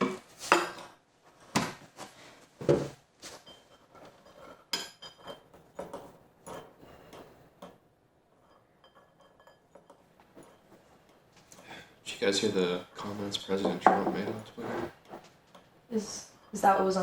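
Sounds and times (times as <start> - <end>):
cutlery and dishes clinking: 3.2 - 11.6, 13.0 - 15.7.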